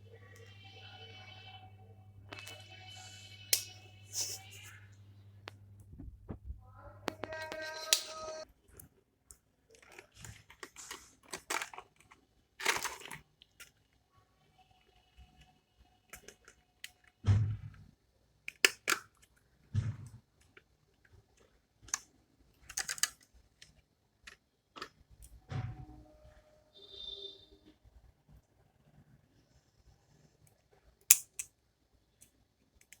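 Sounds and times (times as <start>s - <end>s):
packaging rustling and crinkling: 9.7s - 13.8s.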